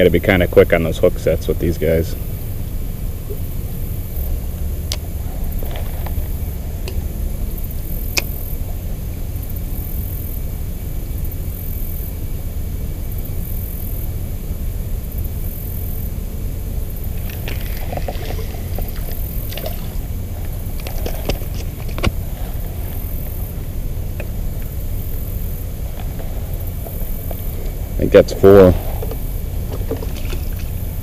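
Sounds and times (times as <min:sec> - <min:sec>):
low outdoor rumble: 0:00.0 - 0:31.0.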